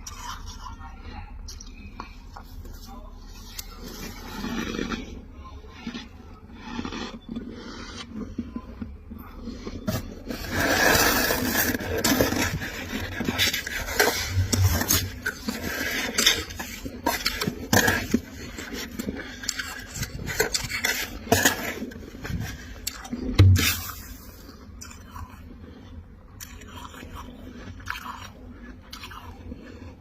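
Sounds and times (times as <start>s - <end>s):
spoon scraping frost: 2.9s - 8.7s, 9.3s - 25.0s.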